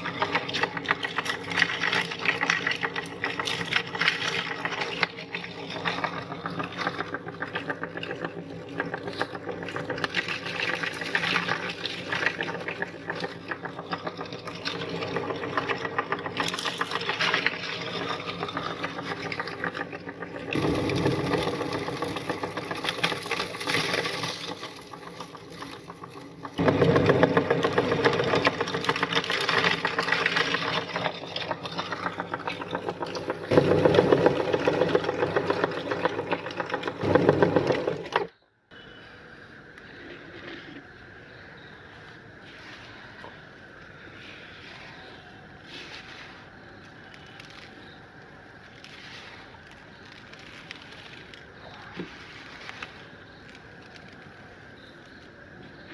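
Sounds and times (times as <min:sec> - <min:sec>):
candies rattling in grinder: 0:00.0 - 0:38.3, 0:45.7 - 0:54.9
meat grinder motor hum: 0:00.0 - 0:38.3.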